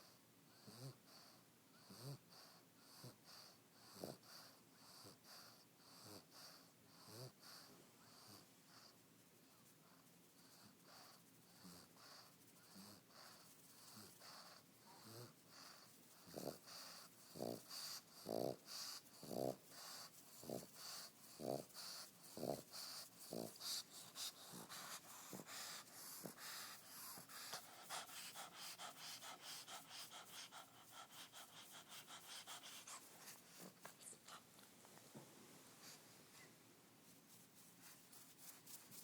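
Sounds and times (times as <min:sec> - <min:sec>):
dog snoring: 0:00.6 - 0:08.9, 0:13.9 - 0:33.4
dog breathing quickly: 0:10.4 - 0:34.5.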